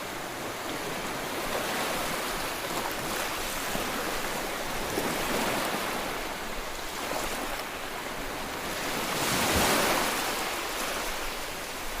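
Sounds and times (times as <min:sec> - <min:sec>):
ocean waves washing ashore: 0:00.0 - 0:12.0.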